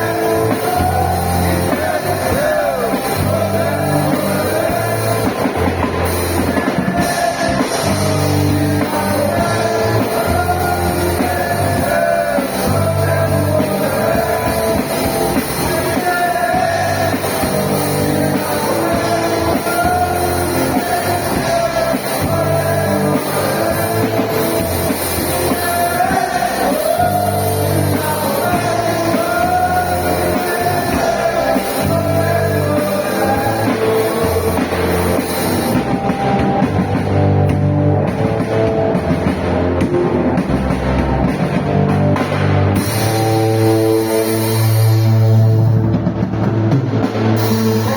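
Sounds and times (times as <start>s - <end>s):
men's group singing: 0.0s - 36.7s
drums: 0.0s - 47.9s
guitar: 0.0s - 47.9s.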